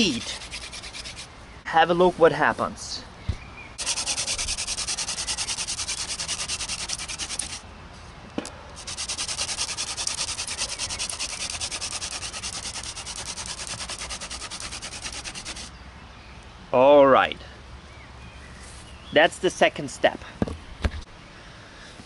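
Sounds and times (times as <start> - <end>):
wooden spindle rasping on board: 0.0 - 1.3, 3.8 - 7.6, 8.8 - 15.7.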